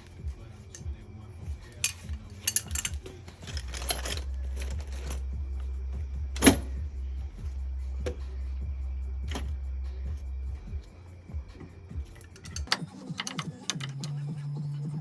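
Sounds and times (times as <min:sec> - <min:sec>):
steady low hum: 0:00.0 - 0:15.0
metal clicks and clinks of fitting: 0:01.8 - 0:04.8, 0:12.1 - 0:14.2.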